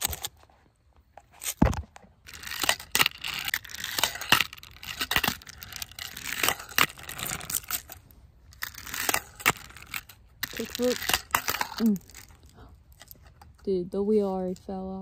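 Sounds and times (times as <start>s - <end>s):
fingerboard wheels rolling on rough ground: 0.0s - 15.0s.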